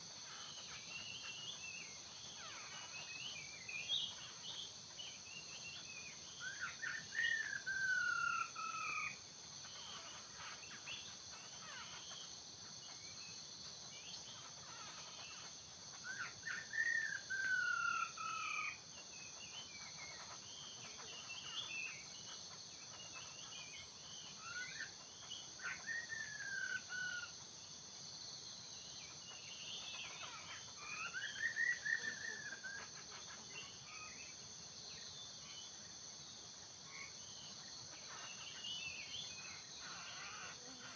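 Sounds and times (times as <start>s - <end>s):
high-pitched insect drone: 6.4s - 12.4s, 13.6s - 18.8s, 29.8s - 34.4s, 36.9s - 40.9s.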